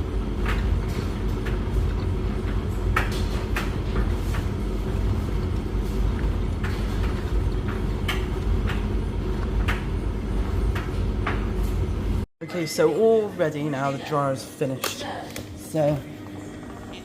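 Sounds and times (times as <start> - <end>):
washing machine drum rumble: 0.0 - 12.3.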